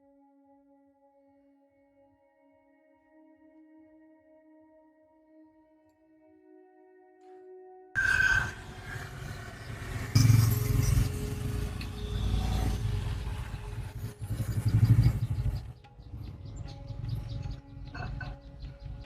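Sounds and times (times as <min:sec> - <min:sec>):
music: 0:00.0 - 0:19.0
vehicle engine rumbling: 0:08.0 - 0:19.0.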